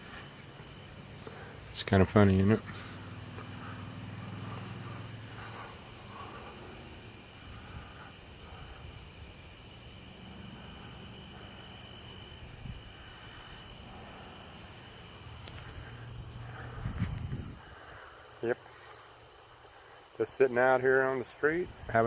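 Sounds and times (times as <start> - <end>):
crickets chirping: 0.0 - 22.0
wind noise on microphone: 12.4 - 13.1, 16.6 - 17.9, 21.7 - 22.0.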